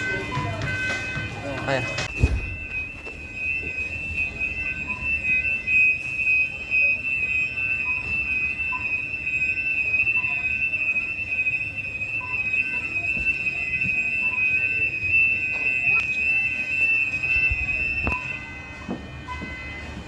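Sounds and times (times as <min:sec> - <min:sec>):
fire alarm high-pitched tone: 0:00.0 - 0:20.0.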